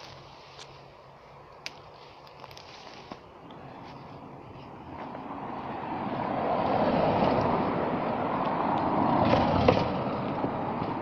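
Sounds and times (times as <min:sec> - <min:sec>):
motor vehicle approaching: 0:03.0 - 0:11.0.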